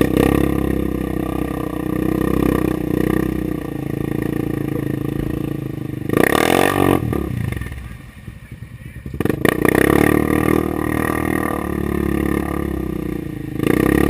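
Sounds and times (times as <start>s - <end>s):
atv engine revving: 0.0s - 14.0s.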